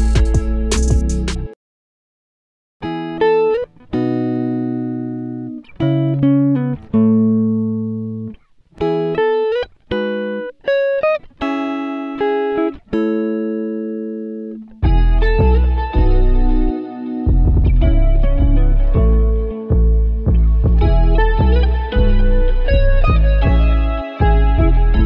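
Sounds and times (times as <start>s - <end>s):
plucked guitar melody: 0.0s - 1.6s, 2.8s - 25.0s.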